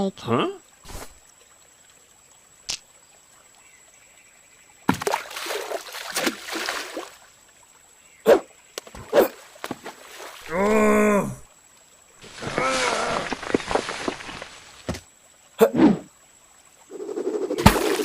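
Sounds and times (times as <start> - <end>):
water splashing: 4.9 - 7.3, 8.8 - 11.0, 12.2 - 15.2, 17.6 - 18.0
pitched vocal exclamation: 10.4 - 11.4.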